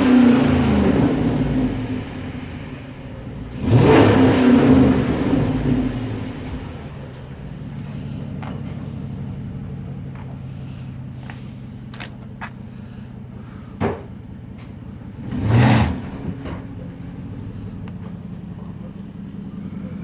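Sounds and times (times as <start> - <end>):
car engine idling: 0.0 - 20.0
thump: 13.8 - 14.2.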